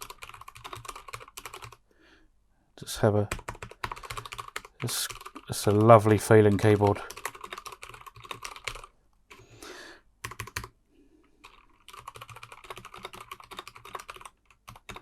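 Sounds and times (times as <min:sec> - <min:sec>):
typing on mechanical keyboard: 0:00.0 - 0:01.8, 0:03.3 - 0:09.4, 0:10.2 - 0:10.7, 0:11.4 - 0:15.0.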